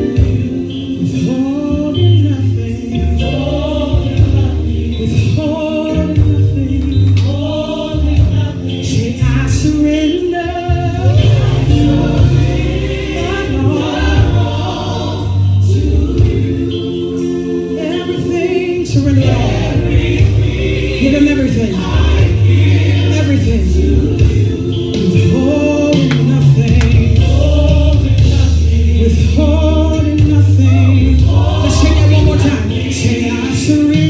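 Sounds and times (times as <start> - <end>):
bass line: 0.0 - 16.9, 19.0 - 34.0
gospel choir singing: 0.0 - 34.0
crisp percussion hits: 26.1 - 27.2.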